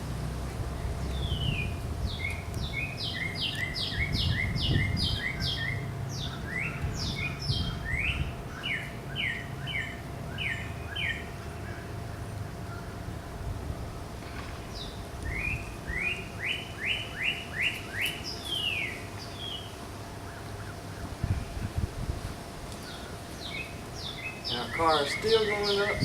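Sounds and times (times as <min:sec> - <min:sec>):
steady low rumble: 0:00.0 - 0:26.0
songbird whistling notes: 0:01.0 - 0:12.9, 0:14.7 - 0:19.7, 0:22.8 - 0:26.0.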